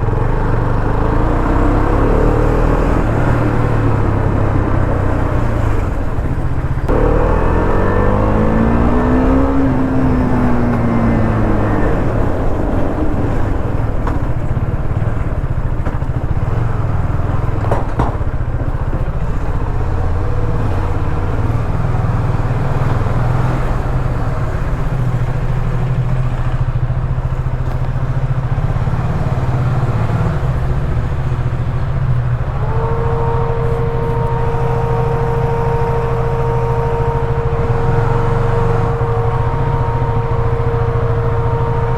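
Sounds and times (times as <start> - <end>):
steady pitched tone: 0.0 - 14.6, 31.0 - 41.9
motorcycle engine running: 0.0 - 41.9.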